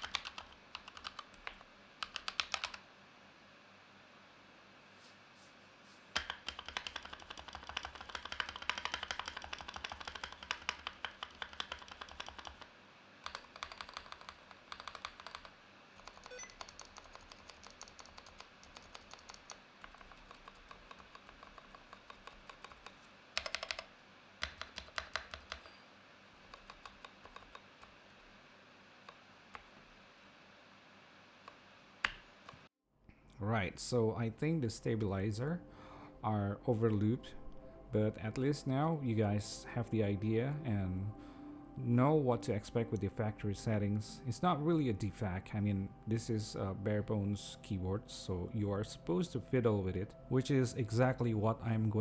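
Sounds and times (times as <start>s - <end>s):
mechanical keyboard typing: 0.0s - 2.8s, 6.1s - 25.8s, 26.4s - 28.1s.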